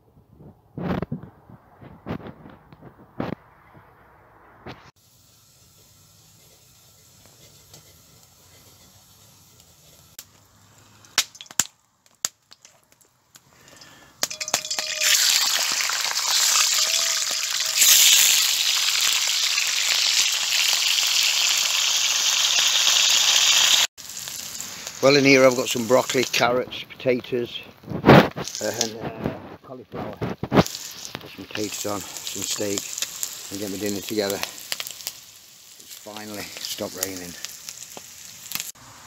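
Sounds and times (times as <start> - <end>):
food sizzling in a frying pan: 5.0 - 11.6, 13.7 - 26.5, 28.2 - 29.2, 30.2 - 39.0.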